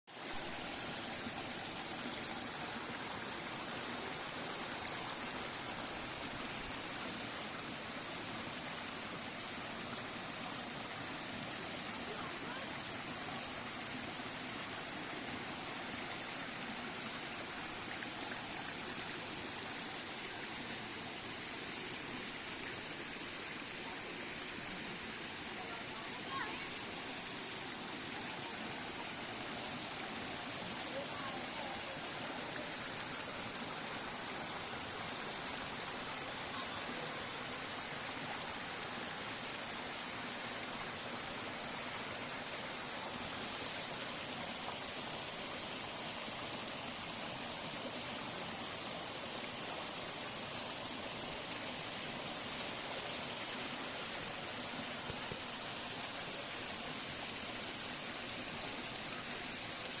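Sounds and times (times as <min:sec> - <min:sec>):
waterfall splashing into pool: 0:00.1 - 0:13.9, 0:17.5 - 1:00.0.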